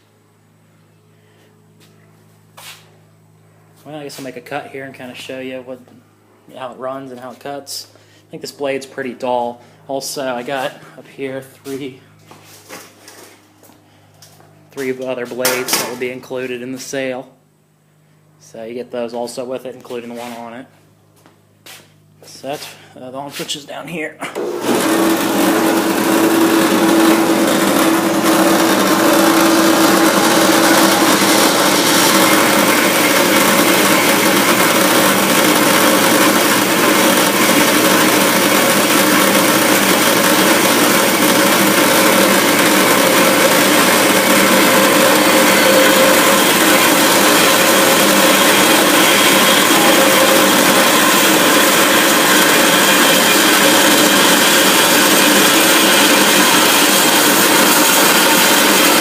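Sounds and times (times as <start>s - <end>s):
bandsaw cutting with whir and rasp: 24.2s - 59.0s.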